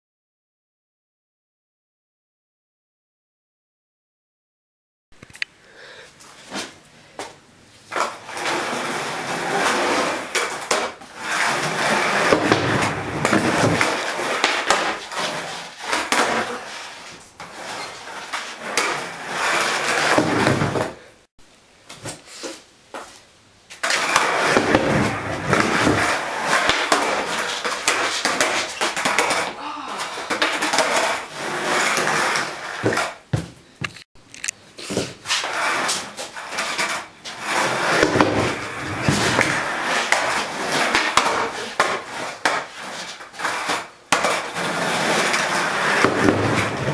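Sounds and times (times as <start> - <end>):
skateboard wheels rolling: 6.3 - 21.1, 22.0 - 34.0, 34.8 - 46.9
skateboard popping and landing: 6.5 - 21.0, 23.7 - 34.0, 34.9 - 46.9.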